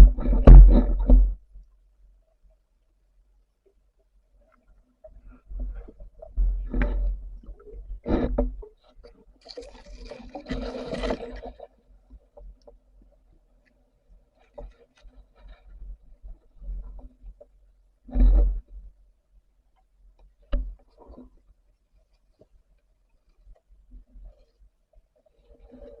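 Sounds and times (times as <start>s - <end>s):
dull knocks: 0.0s - 1.4s
water sloshing and bubbling: 0.0s - 26.0s.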